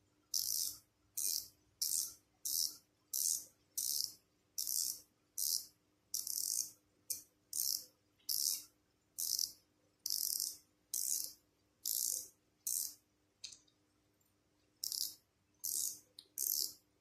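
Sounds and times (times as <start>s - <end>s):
fishing reel ratcheting: 0.4s - 6.7s, 7.6s - 8.6s, 9.2s - 13.0s, 14.8s - 16.8s.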